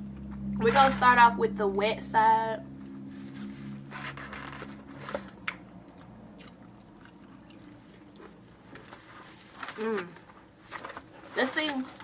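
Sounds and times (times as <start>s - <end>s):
close-up eating sounds: 4.1s - 11.0s.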